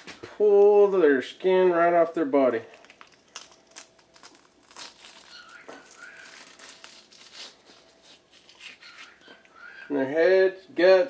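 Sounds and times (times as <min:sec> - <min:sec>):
fish skin tearing off: 0:02.8 - 0:09.2.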